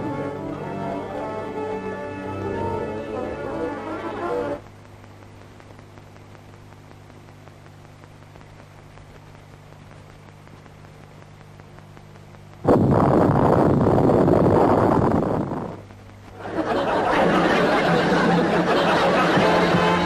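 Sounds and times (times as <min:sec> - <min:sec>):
faint hum and hiss: 0:00.0 - 0:20.0
audience applause: 0:16.4 - 0:20.0.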